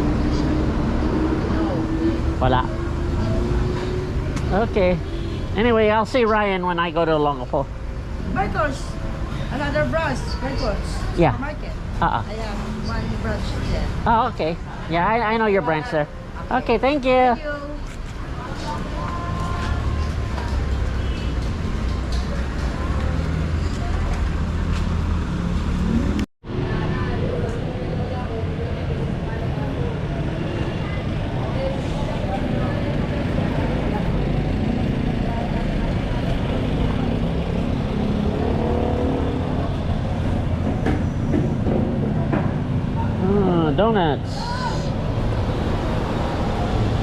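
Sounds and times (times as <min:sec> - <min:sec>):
vehicle engine speeding up: 0:00.0 - 0:04.9, 0:32.4 - 0:43.4
low traffic rumble: 0:00.0 - 0:47.0.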